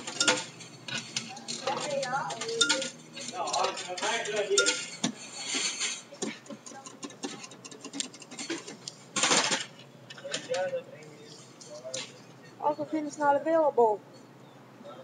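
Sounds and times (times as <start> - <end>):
clattering rustle: 0.0 - 6.6, 8.3 - 12.3
indistinct voices talking: 1.1 - 8.9, 9.9 - 15.0.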